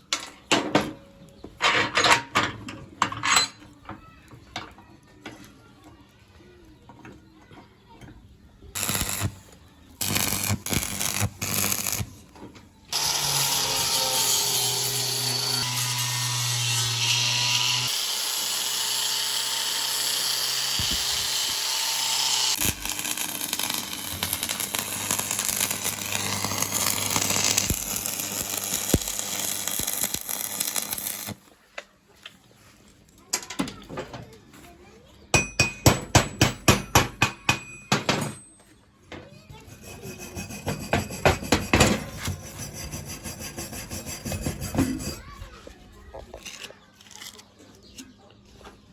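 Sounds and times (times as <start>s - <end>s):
power tool running: 8.8s - 9.4s, 10.0s - 12.1s, 12.9s - 31.4s
sharp metal strokes: 8.8s - 9.4s, 10.0s - 12.2s, 12.9s - 31.4s, 39.6s - 45.2s.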